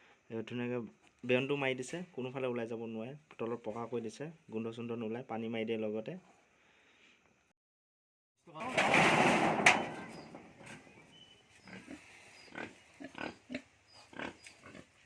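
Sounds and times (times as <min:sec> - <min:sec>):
pigs grunting: 0:11.6 - 0:15.0
pig rough outburst: 0:11.7 - 0:14.9.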